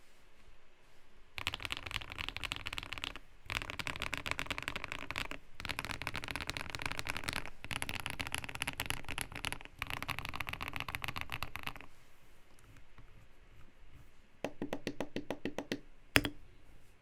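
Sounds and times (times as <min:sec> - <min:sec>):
fast typing on mechanical keyboard: 0:01.4 - 0:11.9.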